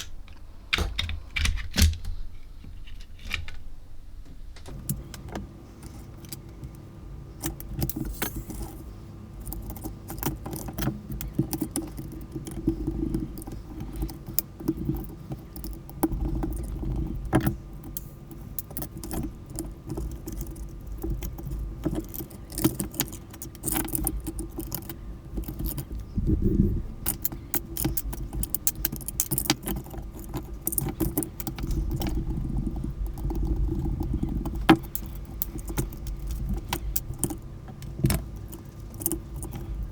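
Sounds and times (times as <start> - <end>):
low handling rumble: 0.0 - 9.7, 24.2 - 27.4, 30.0 - 39.9.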